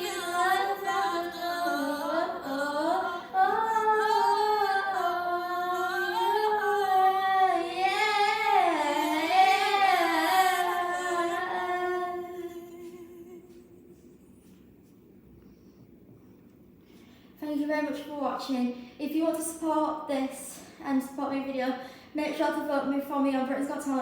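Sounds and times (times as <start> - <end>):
woman singing wordless notes: 0.0 - 13.8.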